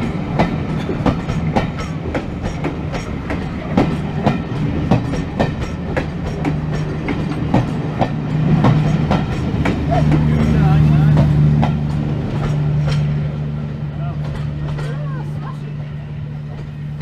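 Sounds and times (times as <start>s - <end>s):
train wheels clicking over rail joints: 0.0s - 17.0s.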